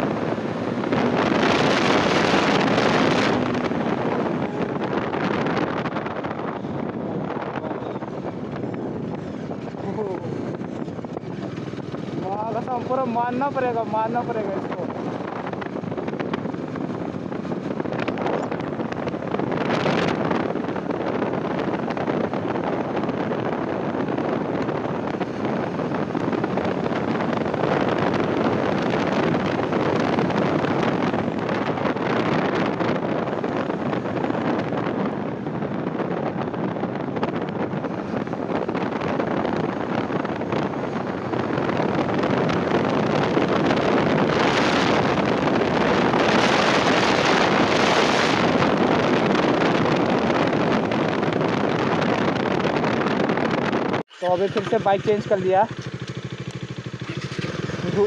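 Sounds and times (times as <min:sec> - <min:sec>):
motorcycle engine running: 0:00.0 - 0:58.0
wind rushing over microphone: 0:00.0 - 0:58.0.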